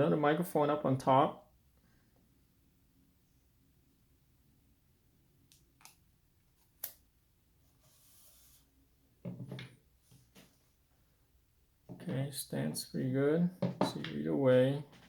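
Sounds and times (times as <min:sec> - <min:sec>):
soft rubbing: 0:07.6 - 0:08.8.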